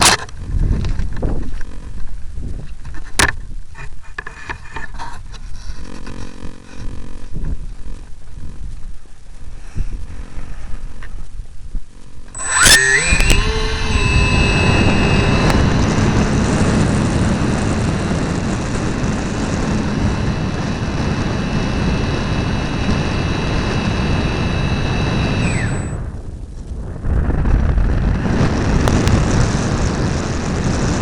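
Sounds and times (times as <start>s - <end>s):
model plane motors whining: 12.2s - 26.1s.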